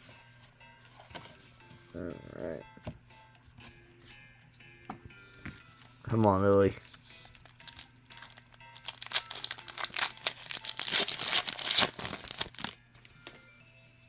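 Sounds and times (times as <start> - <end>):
foil wrapper crinkling and tearing: 6.1 - 12.8.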